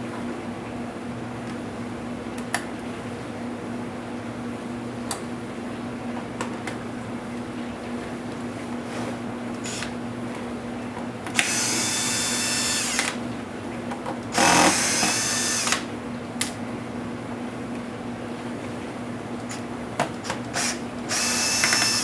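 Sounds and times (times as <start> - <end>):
electric screwdriver whine: 9.6 - 9.9, 11.4 - 13.2, 14.3 - 15.9, 20.3 - 22.0.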